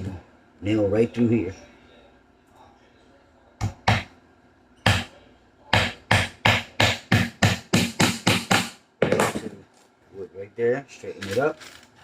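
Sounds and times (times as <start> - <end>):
hammer striking nail into wood: 3.6 - 4.1, 4.8 - 5.1, 5.7 - 9.4.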